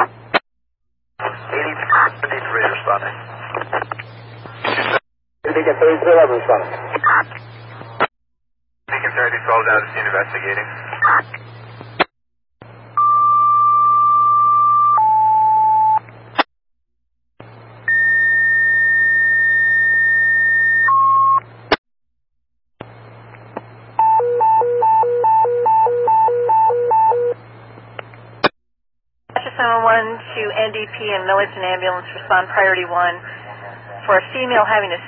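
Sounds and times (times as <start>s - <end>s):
radio hiss and hum: 0.0s - 0.4s, 1.2s - 8.1s, 8.9s - 12.8s, 29.3s - 35.0s.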